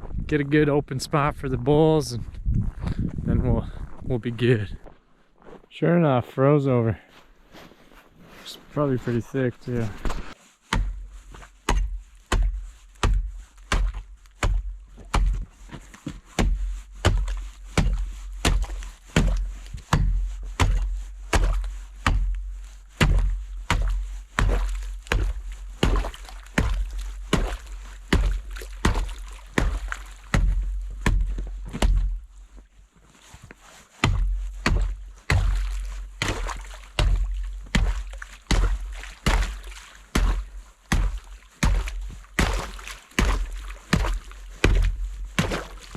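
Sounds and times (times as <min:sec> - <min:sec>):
hand tool chopping ice: 0:11.6 - 0:15.5, 0:16.1 - 0:22.4, 0:23.0 - 0:32.1, 0:34.0 - 0:45.9.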